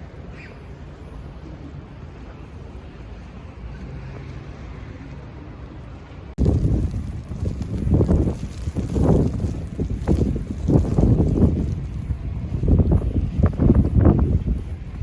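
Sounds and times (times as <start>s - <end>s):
ferry engines rumbling: 0.0s - 15.0s
wind buffeting microphone: 6.4s - 15.0s.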